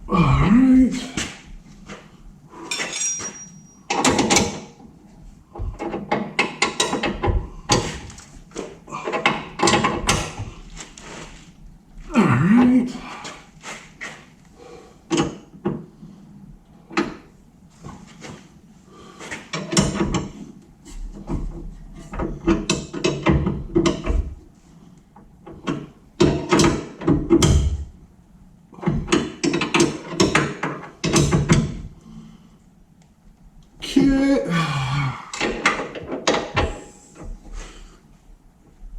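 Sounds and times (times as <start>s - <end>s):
metal parts and tools clanking: 2.6s - 4.7s.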